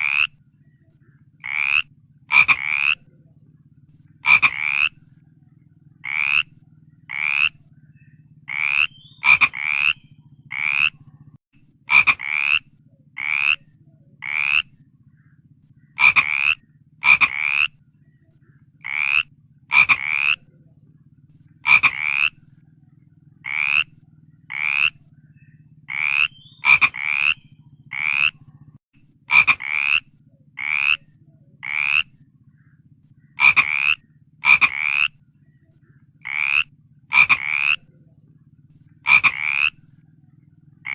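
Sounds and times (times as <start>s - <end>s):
frog croaking: 0.0s - 0.5s, 1.3s - 17.8s, 18.5s - 35.2s, 36.1s - 40.9s
faint steady low hum: 0.0s - 40.9s.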